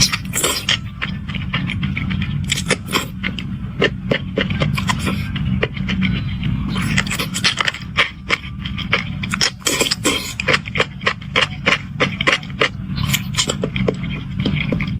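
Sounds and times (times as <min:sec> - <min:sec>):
steady low hum: 0:00.0 - 0:14.9
wet mouth clicks and chewing: 0:00.0 - 0:14.9.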